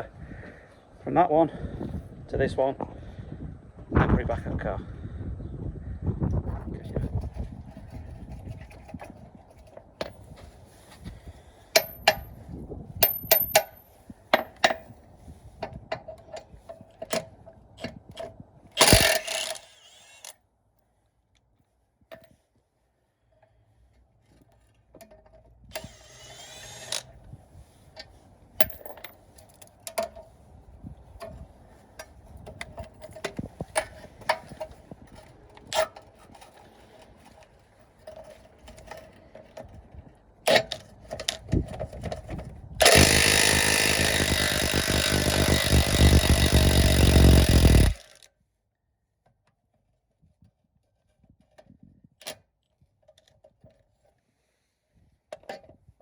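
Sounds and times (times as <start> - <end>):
loud noisy burst: 42.8 - 48.0.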